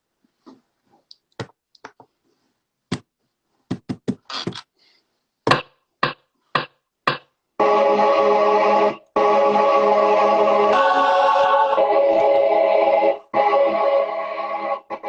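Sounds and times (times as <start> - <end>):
music beat: 5.5 - 15.0.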